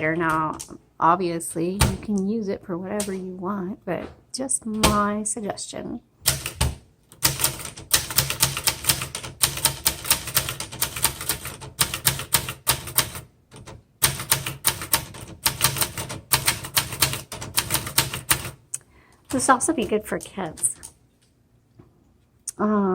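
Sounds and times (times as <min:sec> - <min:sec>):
typewriter key strikes: 0:06.3 - 0:18.6.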